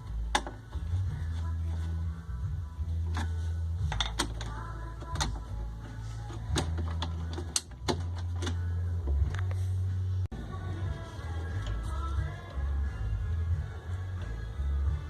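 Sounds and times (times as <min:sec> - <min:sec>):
faint background music: 0:00.0 - 0:15.0
steady low hum: 0:00.0 - 0:15.0
tools clicking and knocking: 0:03.1 - 0:05.5, 0:06.5 - 0:09.5.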